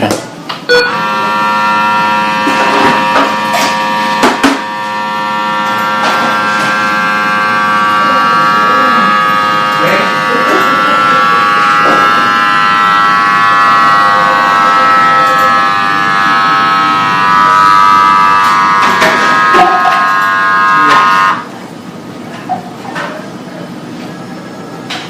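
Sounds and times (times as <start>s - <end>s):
blood pressure pump buzzing: 0.7s - 21.9s.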